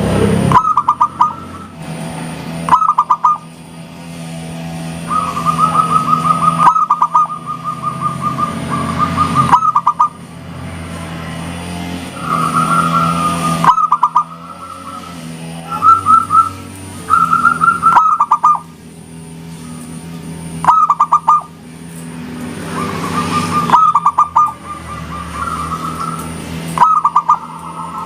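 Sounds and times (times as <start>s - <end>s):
steady low hum: 0.0s - 28.0s
dove cooing: 0.5s - 1.8s, 2.7s - 3.4s, 5.1s - 10.2s, 13.1s - 18.7s, 20.6s - 21.5s, 22.8s - 28.0s.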